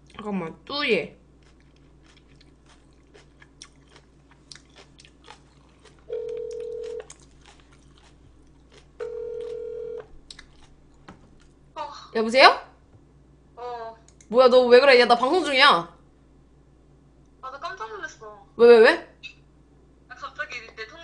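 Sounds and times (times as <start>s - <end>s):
phone ringback tone: 6.1s - 7.1s, 9.0s - 10.1s.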